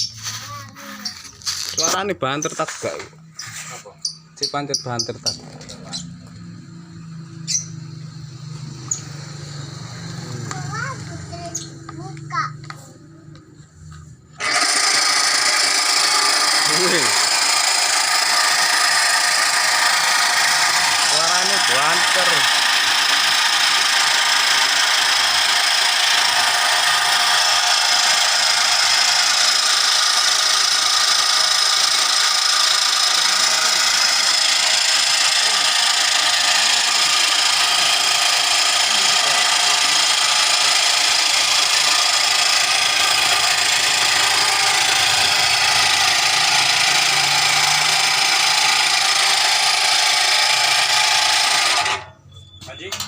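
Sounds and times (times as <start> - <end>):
pump motor running loud: 14.4 - 52.1.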